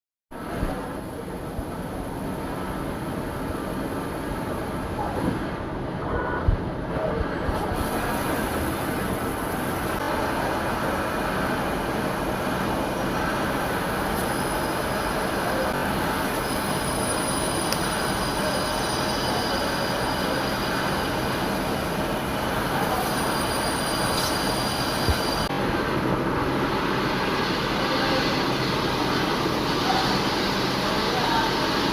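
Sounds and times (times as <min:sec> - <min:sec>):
lathe machining noise: 0:07.9 - 0:31.9
high squealing tones: 0:22.8 - 0:25.5.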